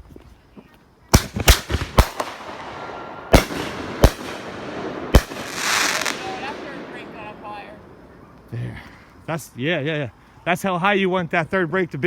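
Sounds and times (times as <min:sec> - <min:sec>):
firework shells bursting: 0:01.2 - 0:08.6.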